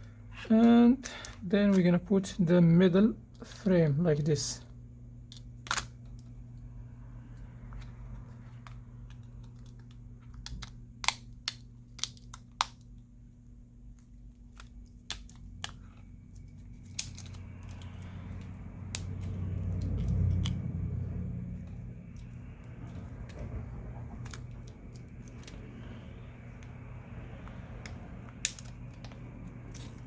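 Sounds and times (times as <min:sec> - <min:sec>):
steady low hum: 0:00.0 - 0:30.0
rubbing and handling noise: 0:13.8 - 0:30.0.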